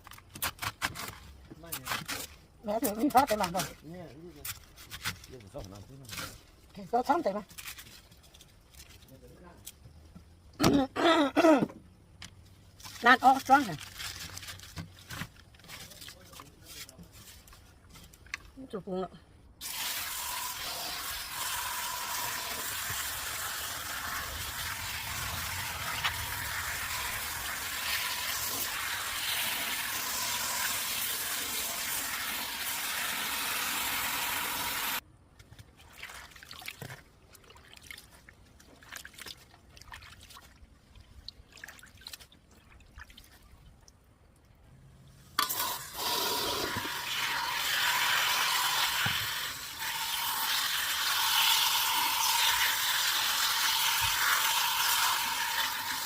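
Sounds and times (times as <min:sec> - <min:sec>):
water running from a tap: 0:19.6 - 0:35.0, 0:45.5 - 0:56.0.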